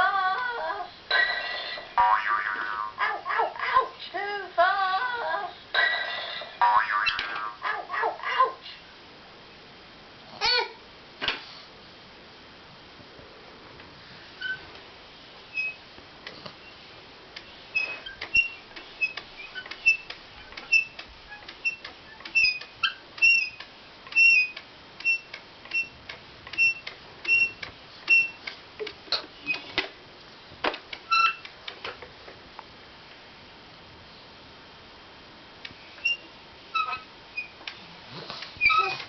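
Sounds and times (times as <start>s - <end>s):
toy car squeaking and clicking: 17.8s - 28.5s, 31.1s - 31.5s, 36.8s - 37.6s, 38.4s - 39.0s.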